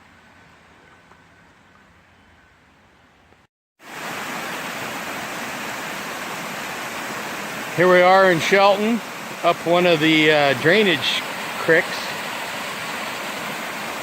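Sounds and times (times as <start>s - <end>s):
creek water rushing: 3.8s - 14.0s.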